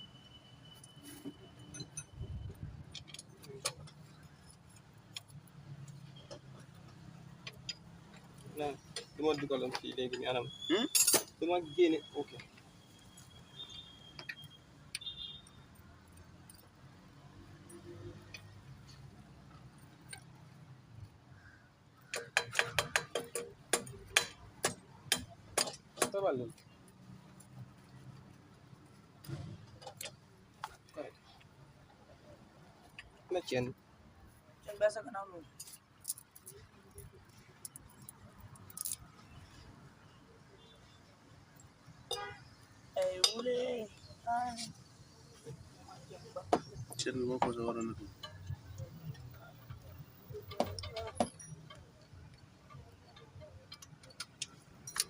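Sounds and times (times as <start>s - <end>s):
metal tools clinking: 1.1s - 13.3s, 35.5s - 39.6s, 46.7s - 55.0s
metallic tool clicks and clinks: 10.9s - 11.5s, 35.6s - 39.1s, 48.1s - 55.0s.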